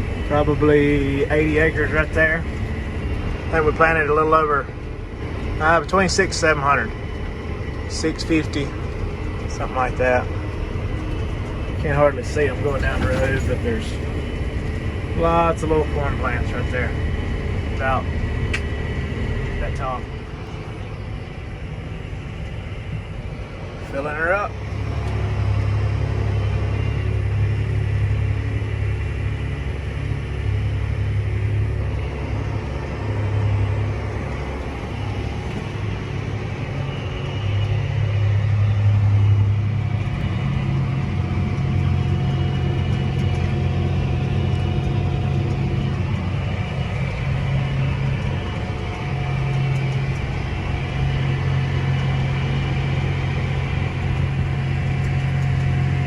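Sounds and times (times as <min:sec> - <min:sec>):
tractor engine running: 0:00.0 - 0:56.0.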